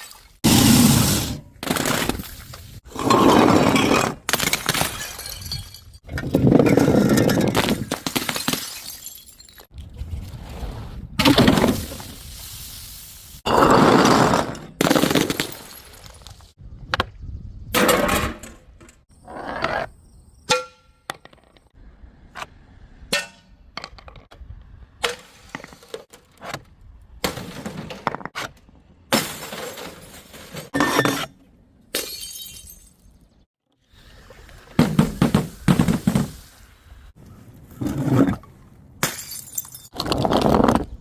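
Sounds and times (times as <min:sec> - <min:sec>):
glass bottles smashing: 0:04.3 - 0:06.0, 0:07.2 - 0:09.7, 0:14.9 - 0:16.3, 0:29.1 - 0:31.0, 0:31.9 - 0:33.1, 0:39.0 - 0:40.0.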